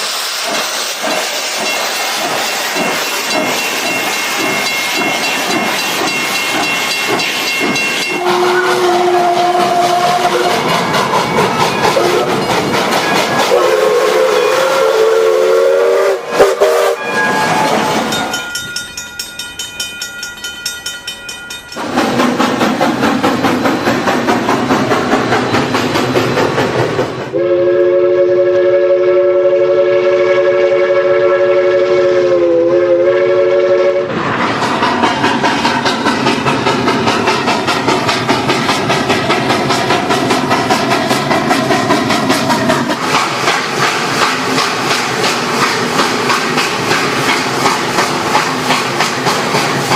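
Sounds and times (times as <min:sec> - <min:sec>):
steam train rail noise: 0:00.0 - 0:49.9
steam train whistle: 0:08.0 - 0:18.3, 0:27.3 - 0:34.2.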